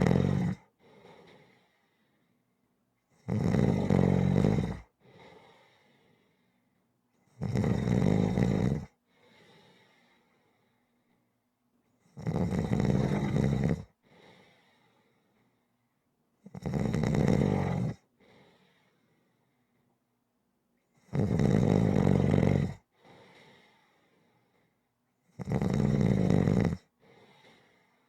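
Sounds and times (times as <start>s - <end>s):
loud snoring: 0.0s - 0.7s, 3.2s - 4.9s, 7.3s - 9.0s, 12.1s - 14.0s, 16.5s - 18.1s, 21.0s - 22.8s, 25.3s - 26.9s.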